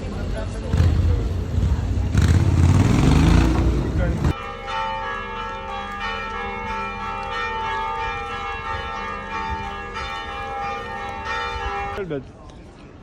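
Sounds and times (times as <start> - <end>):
church bells ringing: 4.3 - 12.0.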